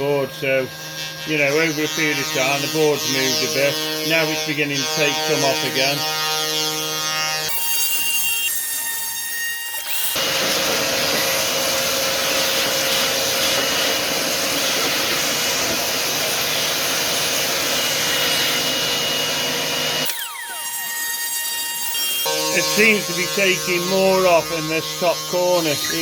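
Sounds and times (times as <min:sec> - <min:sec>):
bit cutting wood: 0:00.0 - 0:26.0
router spindle whining: 0:00.0 - 0:26.0.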